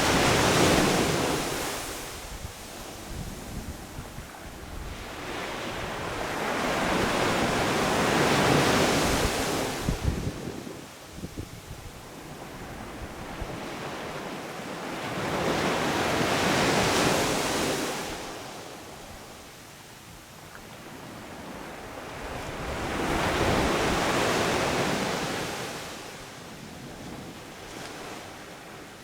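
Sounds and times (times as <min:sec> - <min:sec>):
wind on microphone: 0:00.0 - 0:14.2, 0:21.1 - 0:25.7
waves breaking on beach: 0:00.0 - 0:19.7, 0:20.7 - 0:29.0.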